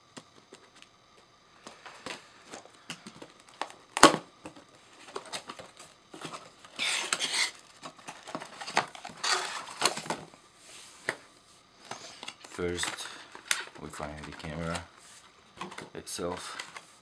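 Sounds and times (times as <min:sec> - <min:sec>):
packaging crinkling: 0:01.7 - 0:04.2, 0:04.9 - 0:10.3, 0:11.9 - 0:15.0.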